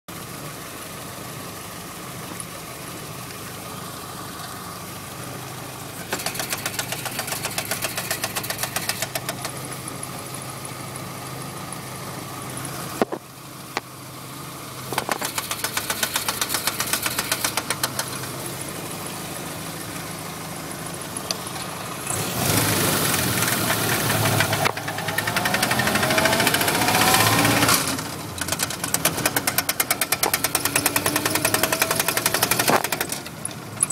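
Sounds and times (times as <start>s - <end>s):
engine running: 0.1s - 33.9s
rhythmic drivetrain knock: 15.2s - 18.2s.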